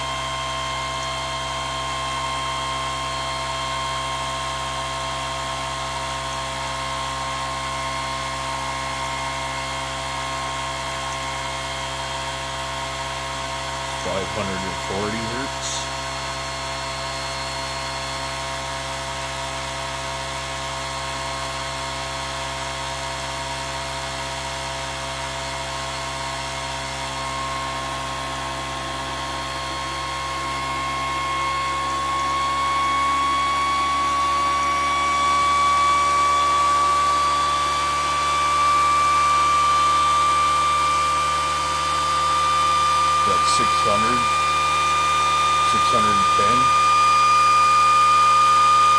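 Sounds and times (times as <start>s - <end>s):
motor whining: 42.1s - 48.9s.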